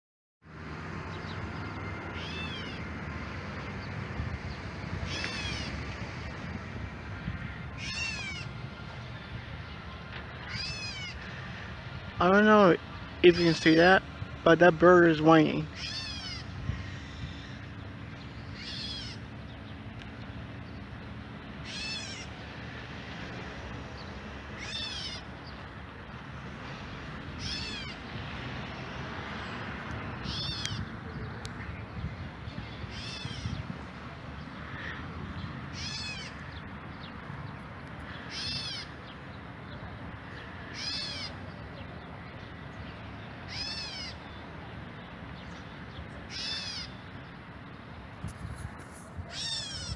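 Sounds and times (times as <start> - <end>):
bird whining call: 1.6 - 2.8, 5.0 - 5.8, 7.7 - 8.6, 10.4 - 11.3, 15.7 - 19.3, 21.6 - 22.4, 24.6 - 25.3, 27.4 - 28.0, 30.2 - 30.9, 32.5 - 33.6, 35.7 - 36.5, 38.1 - 39.0, 40.3 - 41.4, 43.4 - 44.4, 46.3 - 47.0, 49.3 - 49.9.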